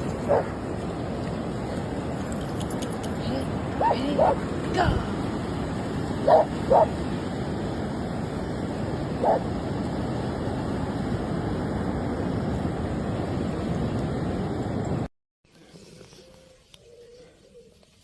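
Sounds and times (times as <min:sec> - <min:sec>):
dog barking: 0:00.3 - 0:00.5, 0:03.8 - 0:04.4, 0:06.2 - 0:06.9, 0:09.2 - 0:09.4.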